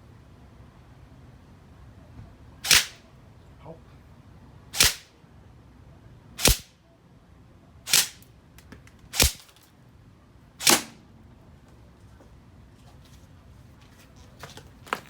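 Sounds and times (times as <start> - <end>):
sharp airsoft rifle shots: 2.6 - 3.1, 4.8 - 5.1, 6.4 - 6.7, 7.9 - 8.2, 9.1 - 9.5, 10.6 - 11.0.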